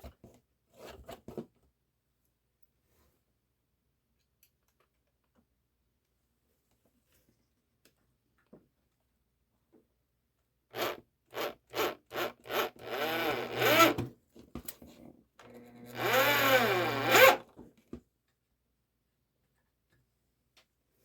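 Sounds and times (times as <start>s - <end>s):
cordless drill driving screw: 10.7s - 14.0s, 15.8s - 17.4s.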